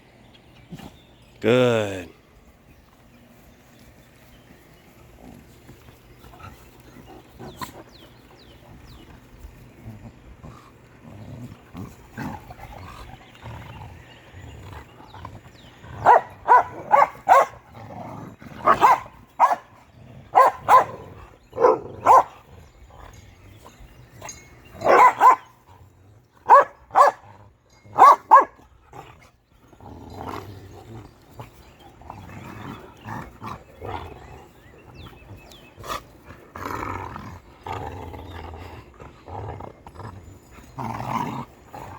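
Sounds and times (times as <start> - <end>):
dogs barking: 16.0 - 17.7, 18.6 - 22.5, 24.3 - 25.8, 26.4 - 27.3, 27.9 - 28.6.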